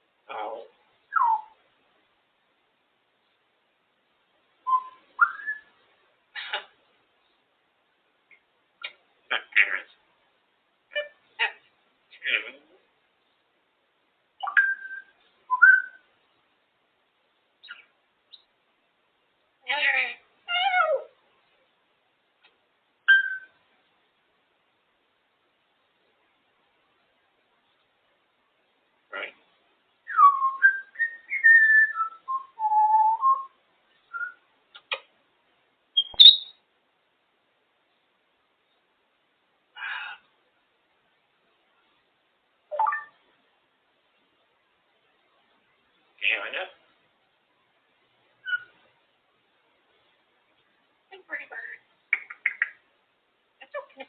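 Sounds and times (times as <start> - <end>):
parrot whistling: 4.7 - 5.7, 14.4 - 16.0, 23.1 - 23.5, 30.1 - 33.5, 34.1 - 34.4, 36.0 - 36.6, 48.4 - 48.7
sharp high squeak: 36.0 - 36.5.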